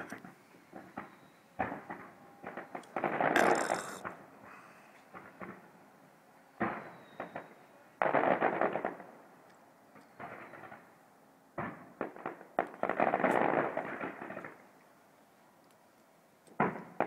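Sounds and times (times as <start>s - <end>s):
distant fireworks bangs and crackling: 0.0s - 4.5s, 5.1s - 5.8s, 6.5s - 9.3s, 9.9s - 14.7s, 16.5s - 17.0s.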